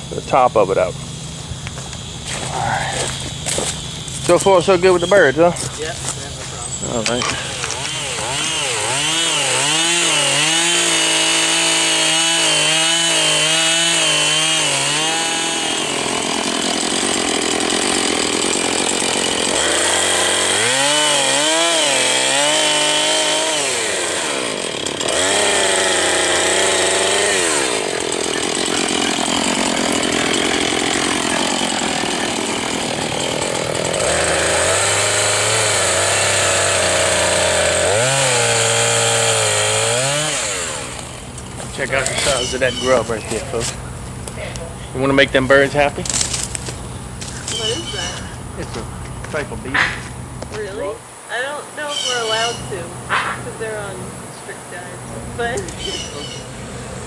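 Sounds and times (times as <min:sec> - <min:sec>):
chainsaw cutting wood: 0:01.7 - 0:57.0.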